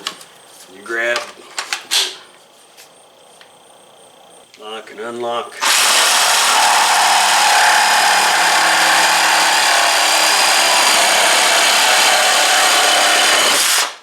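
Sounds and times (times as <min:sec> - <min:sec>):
reciprocating saw cutting wood: 0:05.6 - 0:14.0.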